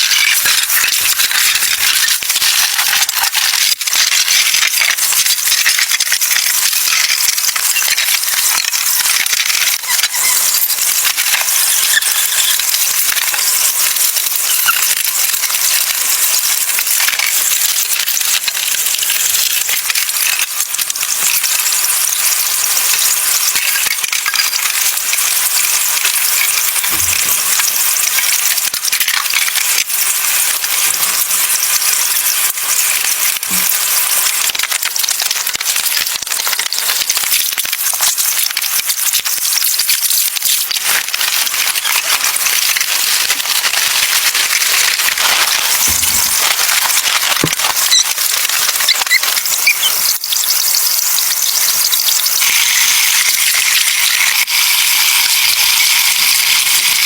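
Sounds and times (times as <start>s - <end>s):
food sizzling in a pan: 0.0s - 57.0s.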